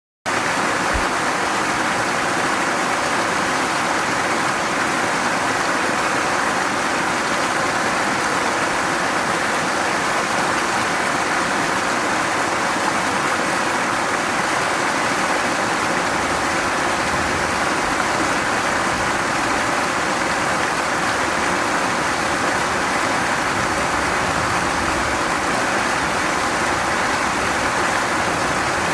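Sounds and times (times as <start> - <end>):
mountain stream flowing: 0.3 - 28.9.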